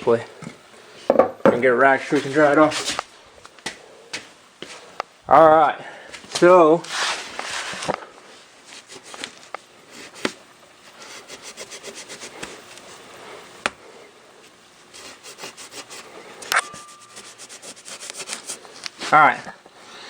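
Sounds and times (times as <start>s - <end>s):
rapid rubbing: 14.9s - 18.8s.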